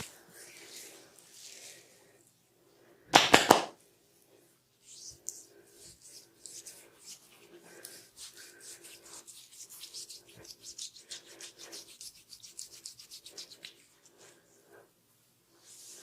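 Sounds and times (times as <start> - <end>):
hands rubbing hair and scalp: 0.0 - 2.0, 4.8 - 14.4, 15.5 - 16.0.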